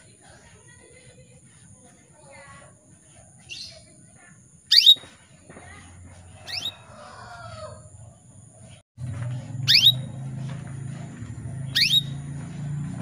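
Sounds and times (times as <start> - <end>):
canary whistled call notes: 4.7 - 5.1, 6.4 - 6.8, 9.6 - 10.1, 11.7 - 12.2.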